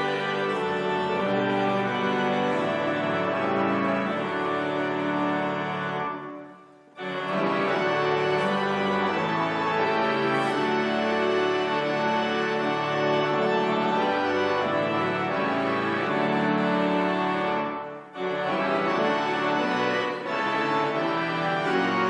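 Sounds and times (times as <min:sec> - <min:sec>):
organ playing slow chords: 0:00.0 - 0:22.0.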